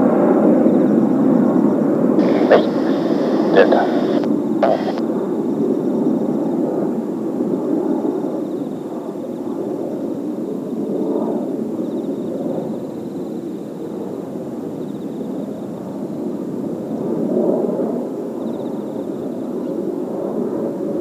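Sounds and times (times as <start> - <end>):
faint high whine: 2.2 - 5.0
jet rumble: 2.2 - 5.0.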